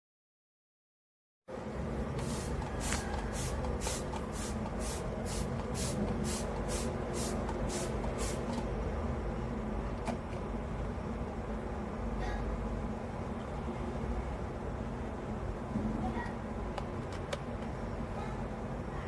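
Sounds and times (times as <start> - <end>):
spray bottle squirts: 2.2 - 8.5.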